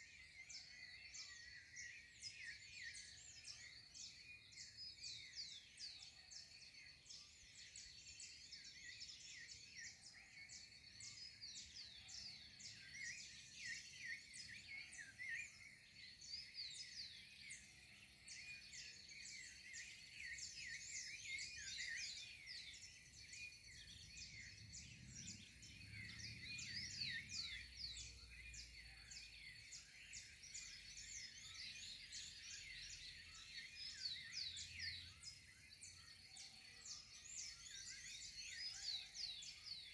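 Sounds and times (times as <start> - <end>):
birds chirping: 10.6 - 39.9.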